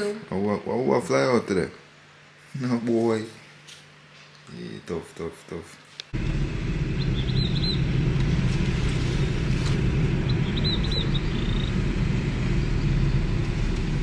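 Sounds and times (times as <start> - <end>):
car engine and road rumble: 6.1 - 14.0.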